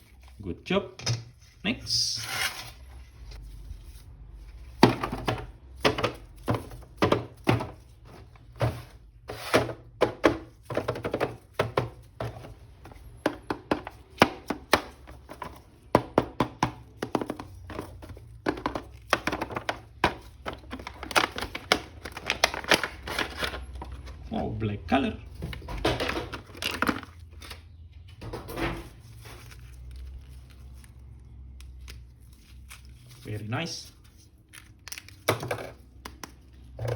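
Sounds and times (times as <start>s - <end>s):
plastic packaging clicks and knocks: 4.7s - 8.9s, 9.9s - 24.0s, 25.4s - 27.6s, 34.6s - 36.9s.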